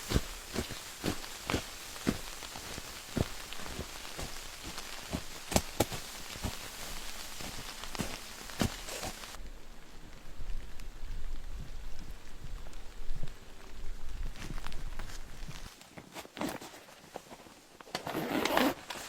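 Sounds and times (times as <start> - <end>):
sharp taps and crunches: 0.0 - 9.4
blizzard wind and blowing snow: 0.0 - 15.9.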